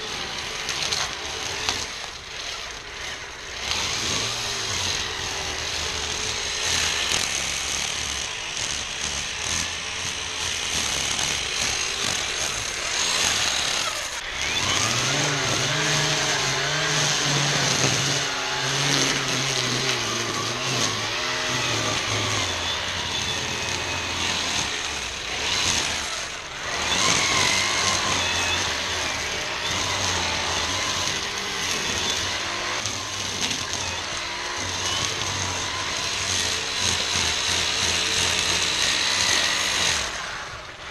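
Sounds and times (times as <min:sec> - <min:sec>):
string trimmer whining: 0:00.0 - 0:40.9
trimmer line hissing through grass: 0:00.0 - 0:40.9.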